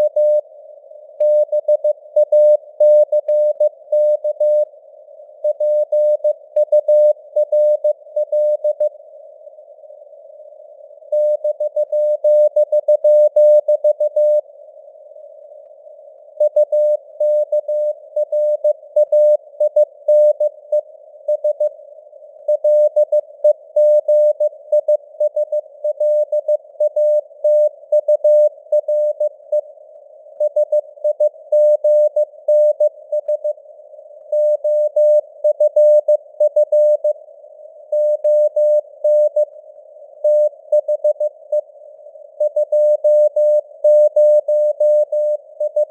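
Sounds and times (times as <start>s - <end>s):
morse code beeps: 34.4s - 37.2s, 42.4s - 45.9s.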